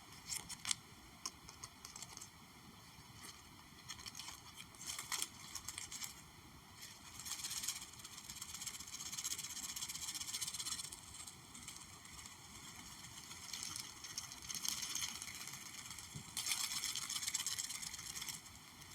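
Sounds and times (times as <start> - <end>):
soft rustling and scratching: 0.0 - 18.9.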